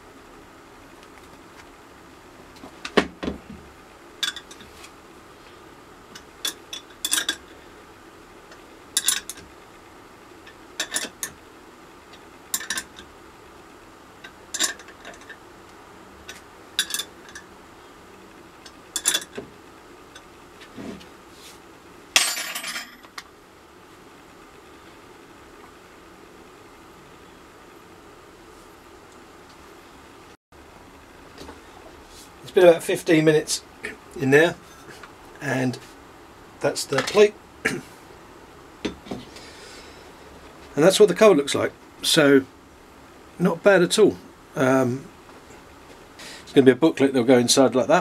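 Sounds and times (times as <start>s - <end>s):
spanner clinking on bolts: 6.4s - 7.4s, 9.0s - 9.4s, 12.5s - 13.1s, 14.2s - 15.4s, 16.3s - 17.4s, 18.6s - 19.4s.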